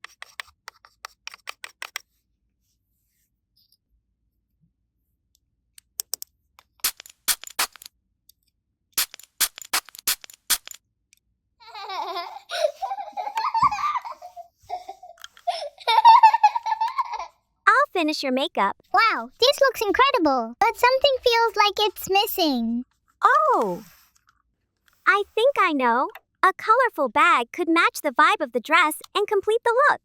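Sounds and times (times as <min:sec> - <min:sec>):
plastic toy pieces clicking: 0:05.8 - 0:07.9, 0:09.0 - 0:10.8
high giggling voice: 0:11.6 - 0:17.4.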